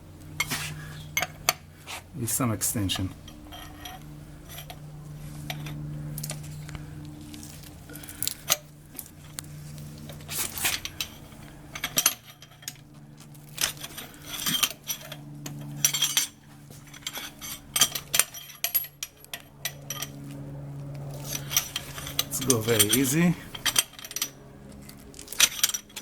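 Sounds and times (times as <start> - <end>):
metal jack handle clinking: 11.8 - 12.8, 13.6 - 20.1, 21.3 - 24.4.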